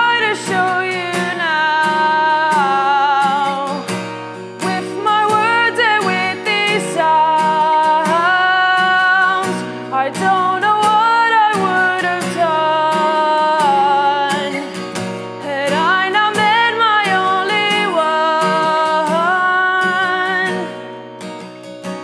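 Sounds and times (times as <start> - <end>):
woman singing: 0.0 - 21.2
strummed acoustic guitar: 0.0 - 22.0.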